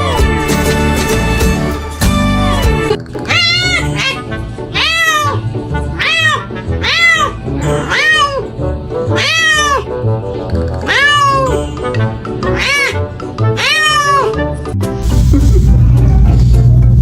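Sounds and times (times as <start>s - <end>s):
background music: 0.0s - 17.0s
cat meowing: 3.3s - 5.4s, 6.0s - 9.9s, 10.8s - 11.7s, 12.4s - 14.5s.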